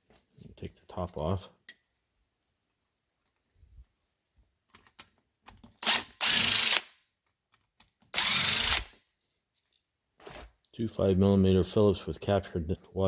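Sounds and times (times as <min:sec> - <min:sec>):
power screwdriver running: 0:05.8 - 0:06.9, 0:08.2 - 0:08.9.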